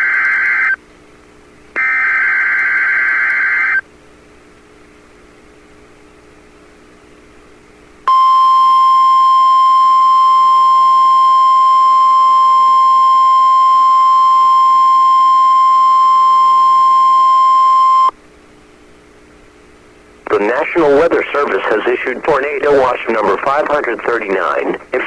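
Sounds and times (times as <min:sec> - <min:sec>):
loud steady high beep: 0:08.1 - 0:18.1.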